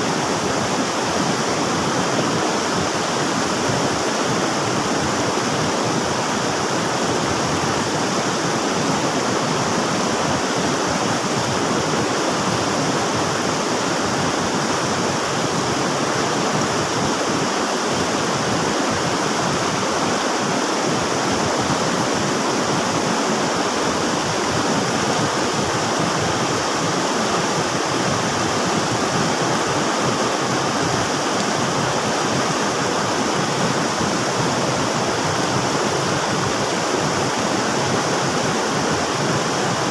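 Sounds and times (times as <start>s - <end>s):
river water rushing: 0.0s - 39.9s.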